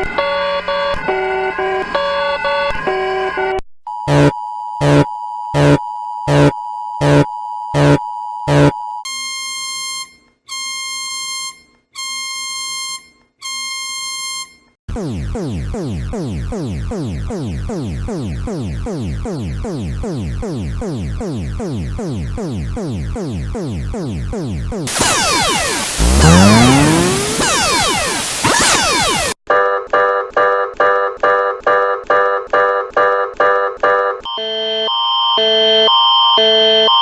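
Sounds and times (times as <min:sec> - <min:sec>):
falling alarm sweep: 0:14.9 - 0:29.4
long buzzy beeps: 0:22.8 - 0:29.4
steady alarm tone: 0:24.9 - 0:29.4
sharp alarm beeps: 0:34.3 - 0:37.0.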